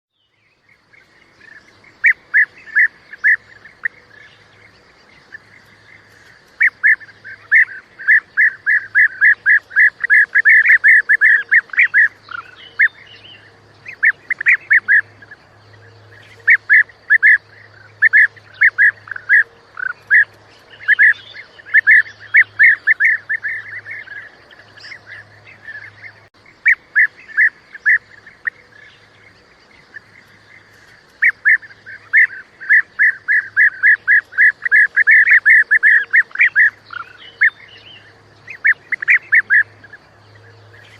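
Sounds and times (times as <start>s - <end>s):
bird chirps: 0.1s - 40.9s
faint steady hum: 0.2s - 40.9s.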